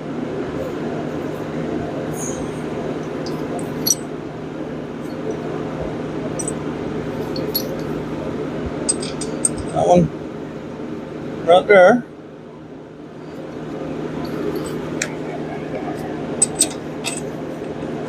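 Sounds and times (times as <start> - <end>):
steady whir with low hum: 0.0 - 18.0
metal bolts clicking and clinking: 2.2 - 4.1, 6.3 - 6.6, 7.2 - 8.0, 8.8 - 9.9, 14.2 - 15.2, 16.4 - 17.8.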